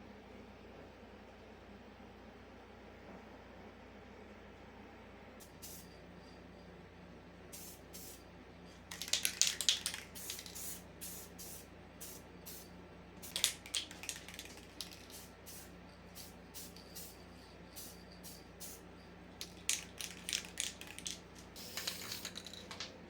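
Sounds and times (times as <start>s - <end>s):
faint steady hum: 0.0s - 23.0s
spray paint can hissing: 7.6s - 8.2s, 8.9s - 18.8s, 19.4s - 22.8s.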